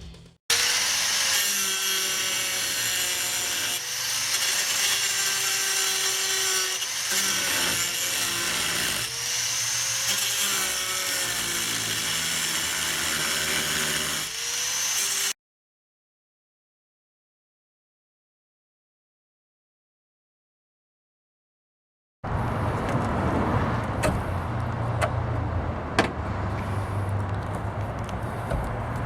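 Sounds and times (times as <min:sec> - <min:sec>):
electric power tool cutting: 0:00.5 - 0:15.4.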